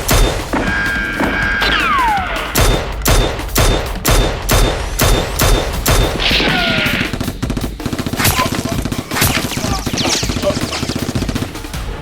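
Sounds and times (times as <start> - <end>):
gunshots with high ping: 0.0 - 11.7.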